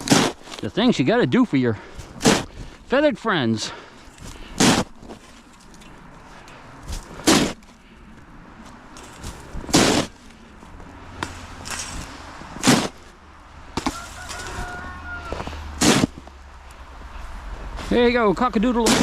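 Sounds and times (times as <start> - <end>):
snow shovel scooping snow: 0.0 - 1.0, 1.9 - 2.9, 4.2 - 5.5, 6.9 - 7.7, 9.0 - 10.3, 11.4 - 13.1, 15.3 - 16.2, 18.8 - 19.0
rooster crowing faintly: 13.8 - 16.1.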